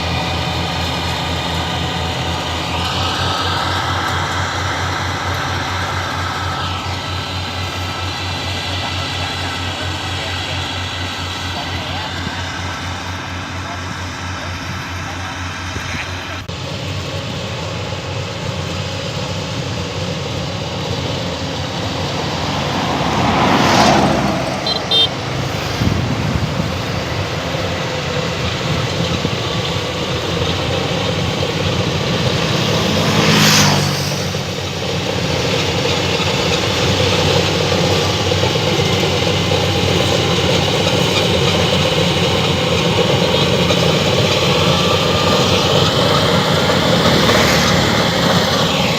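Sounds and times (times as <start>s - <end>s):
combine harvester running: 0.0s - 48.9s
short high beeps: 24.6s - 25.2s.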